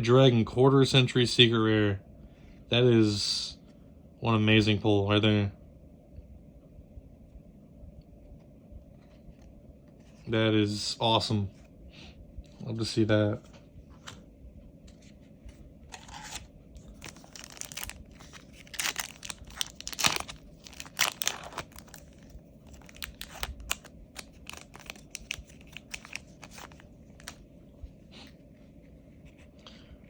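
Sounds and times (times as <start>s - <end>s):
foil wrapper tearing and crinkling: 15.9s - 27.4s.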